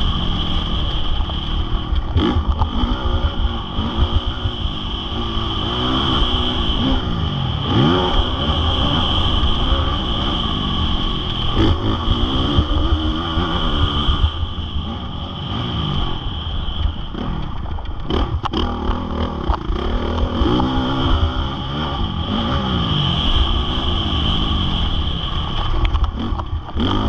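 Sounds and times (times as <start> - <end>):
motocross engine revving: 0.0 - 27.0.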